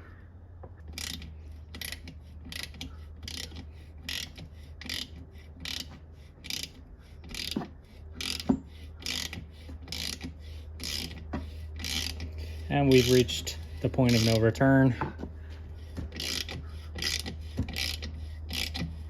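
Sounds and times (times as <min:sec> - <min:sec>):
steady low hum: 0:00.0 - 0:19.0
tap wrench clicking: 0:00.9 - 0:06.7, 0:07.3 - 0:12.3, 0:16.1 - 0:18.9.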